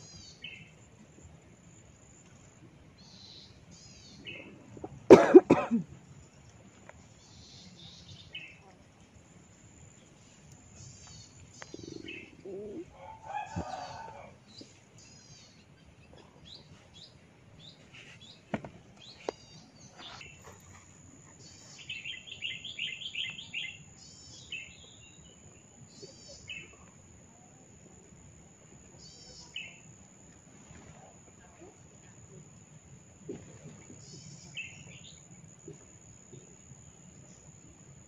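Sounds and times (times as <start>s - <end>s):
small birds chirping: 2.0s - 5.0s, 6.1s - 27.0s.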